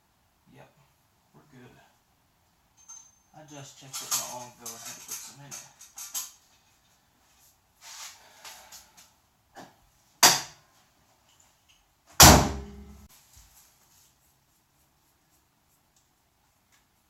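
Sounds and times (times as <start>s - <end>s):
car hood slamming: 12.2s - 13.0s.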